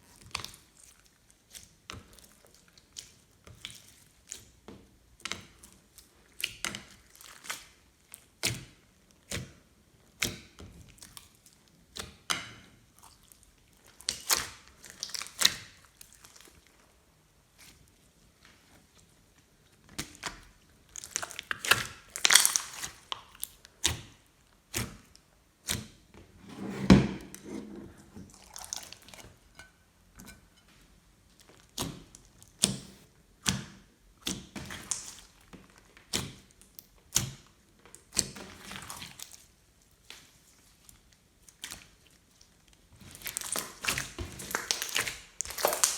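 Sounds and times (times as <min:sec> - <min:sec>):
slime squelching and popping: 0:20.0 - 0:24.1, 0:31.6 - 0:39.3, 0:43.1 - 0:45.9.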